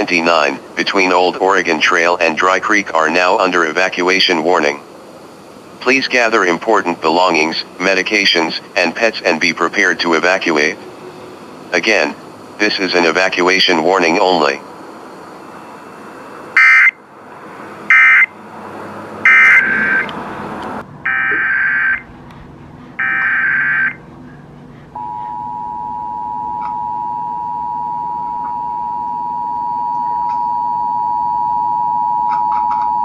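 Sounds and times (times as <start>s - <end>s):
faint radio hiss: 0.0s - 16.6s
two-tone attention signal: 25.0s - 33.0s.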